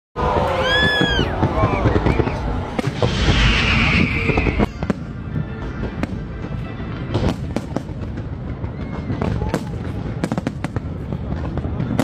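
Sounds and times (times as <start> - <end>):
fireworks bangs: 0.2 - 12.0
hissing crackle of fireworks: 0.2 - 12.0.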